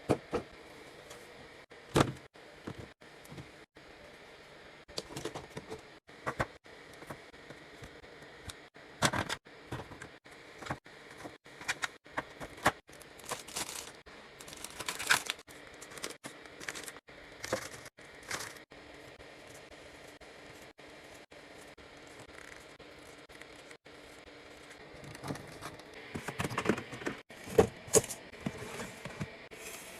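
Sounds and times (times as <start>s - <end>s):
plastic packaging crinkling: 13.2s - 18.6s.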